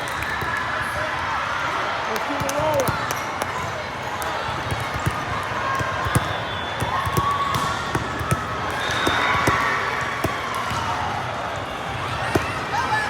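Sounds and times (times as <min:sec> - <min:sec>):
murmur of voices: 0:00.0 - 0:13.0
volleyballs smacking on gym floor: 0:02.2 - 0:03.6, 0:04.6 - 0:13.0.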